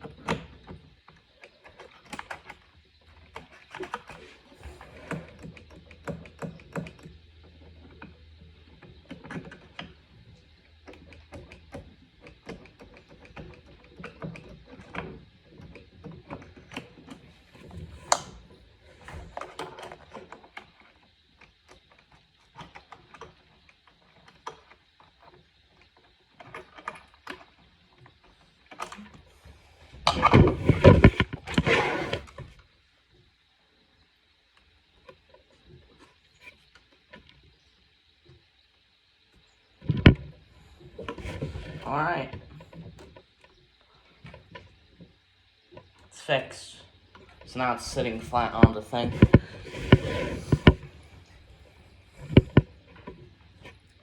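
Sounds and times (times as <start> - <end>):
small clicks and taps of tool work: 0.0 - 8.1, 48.6 - 50.9, 52.2 - 53.8
rough handling noise with thuds: 47.9 - 51.1, 52.2 - 52.8.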